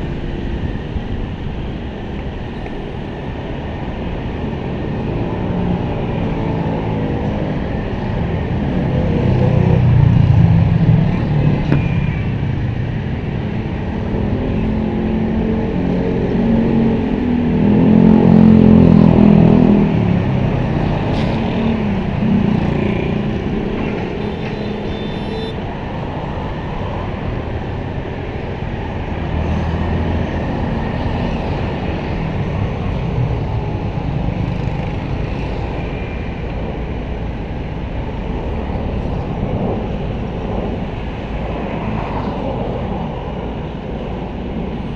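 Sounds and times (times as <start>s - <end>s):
backhoe diesel engine revving: 16.4s - 25.5s.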